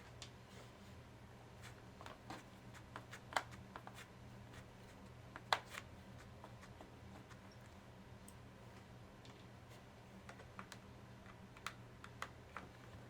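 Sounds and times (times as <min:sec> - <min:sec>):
small clicks and taps: 0:02.0 - 0:04.0, 0:10.2 - 0:13.0.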